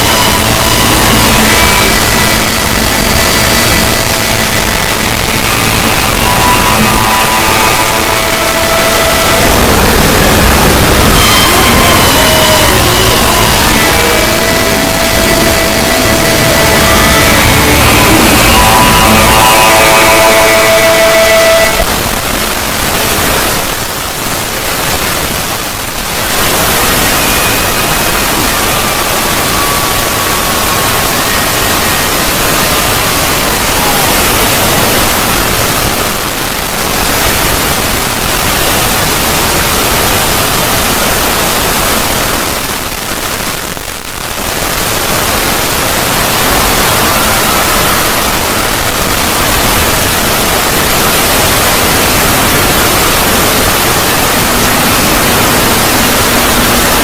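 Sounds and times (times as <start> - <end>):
faint thin tone drifting down: 0.0 - 24.8
loud static-like hiss: 0.0 - 57.0.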